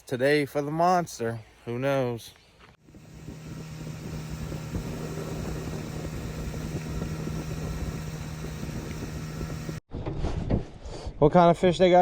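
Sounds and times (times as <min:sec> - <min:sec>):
outboard motor humming: 0:02.8 - 0:09.8.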